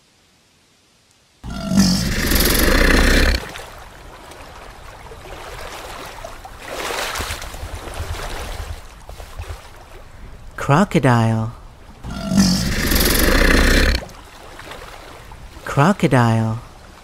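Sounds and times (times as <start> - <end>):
warthog calling: 1.4 - 3.6, 12.0 - 14.1.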